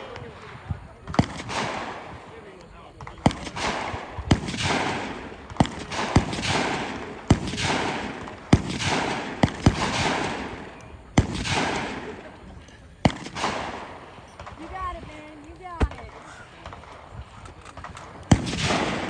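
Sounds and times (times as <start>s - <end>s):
gunshots with echo: 0.0s - 2.3s, 3.2s - 14.6s, 18.3s - 19.0s.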